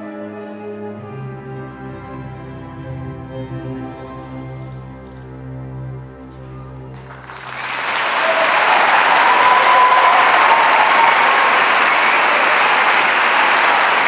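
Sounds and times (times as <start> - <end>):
audience applause: 6.9 - 14.0.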